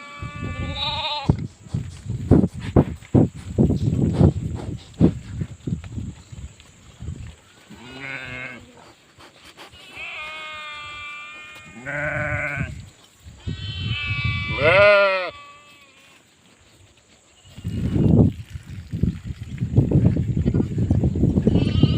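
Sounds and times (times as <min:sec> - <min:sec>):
sheep bleating: 0:00.0 - 0:01.3, 0:07.7 - 0:08.6, 0:09.8 - 0:12.8, 0:13.4 - 0:16.2, 0:21.4 - 0:21.9.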